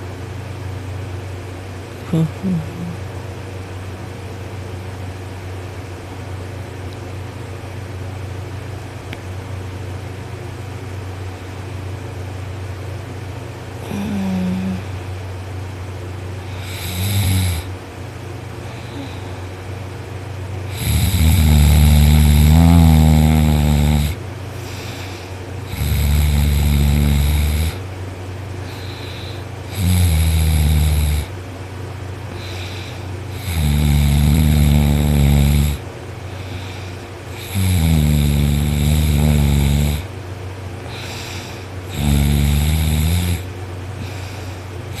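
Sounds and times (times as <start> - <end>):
man snoring loudly: 2.0 - 3.0, 13.8 - 14.9, 16.5 - 17.7, 20.7 - 24.2, 24.8 - 27.8, 28.7 - 31.3, 32.4 - 35.8, 36.4 - 40.1, 40.9 - 44.2.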